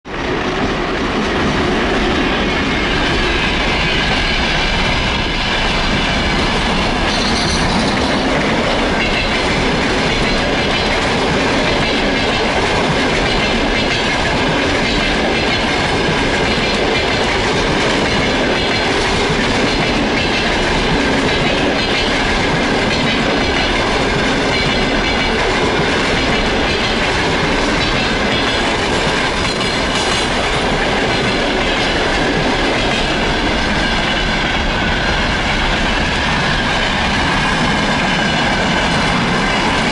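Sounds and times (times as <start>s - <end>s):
train wheels on rails: 0.1s - 39.9s.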